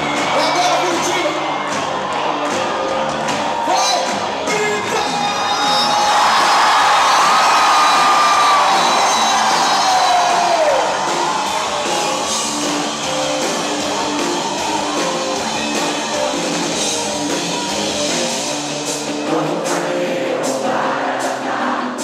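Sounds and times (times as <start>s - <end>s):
live rock band playing: 0.0s - 22.0s
person singing: 19.1s - 22.0s.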